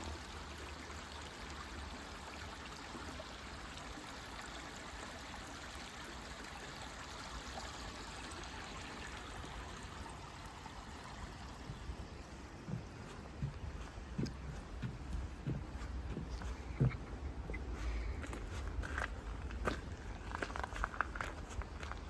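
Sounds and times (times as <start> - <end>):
stream flowing: 0.0 - 22.0
soft knocks: 12.6 - 17.7.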